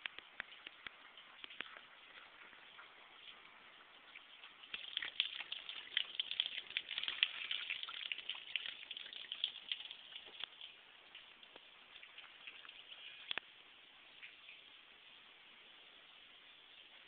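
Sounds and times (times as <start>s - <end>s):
rain pattering on hard surfaces: 0.0s - 17.0s.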